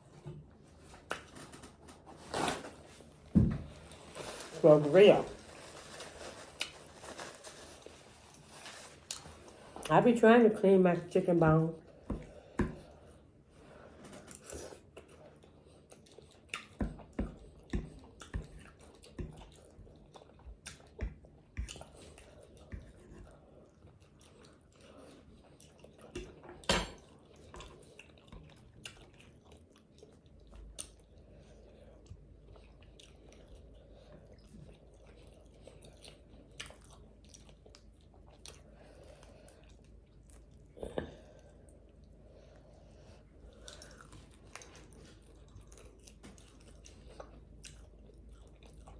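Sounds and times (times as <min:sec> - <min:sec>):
chewing chicken wings: 0:14.3 - 0:42.1, 0:43.4 - 0:48.9.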